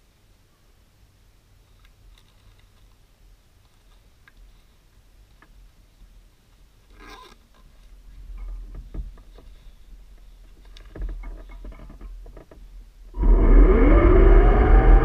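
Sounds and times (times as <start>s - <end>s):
light clicks and knocks: 7.0s - 12.7s
faint hum: 12.6s - 15.0s
model bus motor whining: 13.2s - 15.0s.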